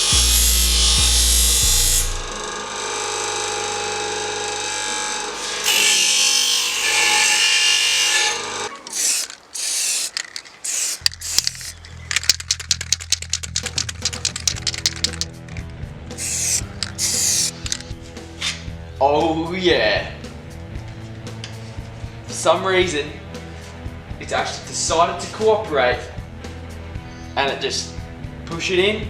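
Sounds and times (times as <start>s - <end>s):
background music: 0.0s - 2.6s, 11.4s - 29.0s
power tool grinding metal: 0.0s - 11.9s, 16.2s - 17.8s
fast clicks: 8.8s - 17.9s.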